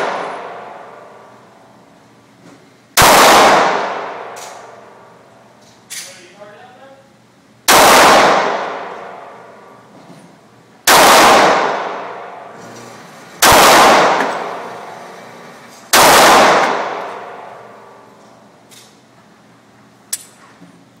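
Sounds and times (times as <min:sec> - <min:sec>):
pistol shots echoing: 0:00.0 - 0:01.1, 0:03.0 - 0:04.9, 0:07.7 - 0:09.6, 0:10.9 - 0:12.5, 0:13.4 - 0:15.0, 0:15.9 - 0:18.0.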